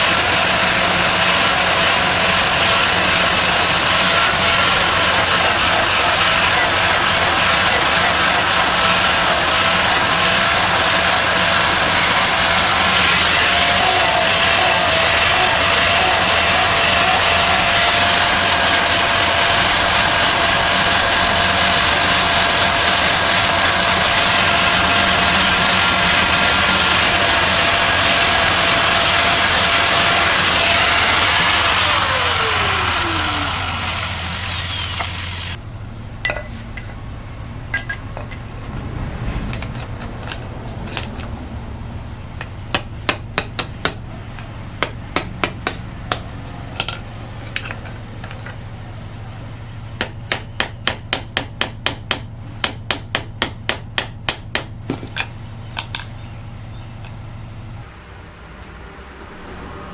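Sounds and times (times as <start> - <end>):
low motor hum: 0.0 - 52.9, 53.6 - 59.9
machine spinning down with whine: 11.6 - 35.6.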